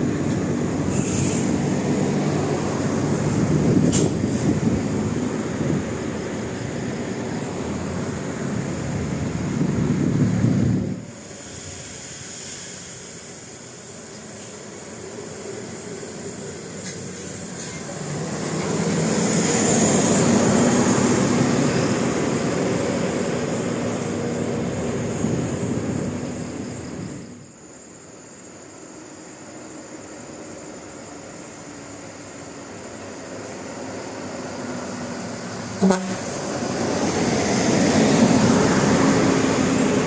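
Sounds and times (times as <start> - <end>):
large vehicle passing: 33.6 - 40.0.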